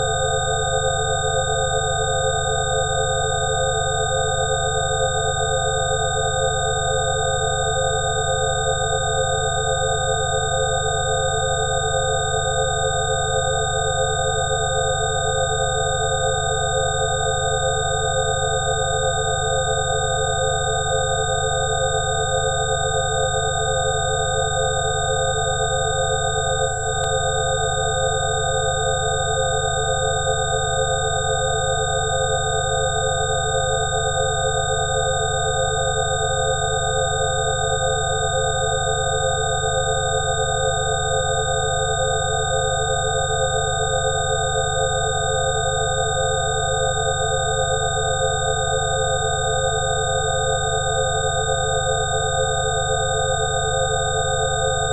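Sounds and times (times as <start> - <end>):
electronic sine tone drone: 0.0 - 54.9.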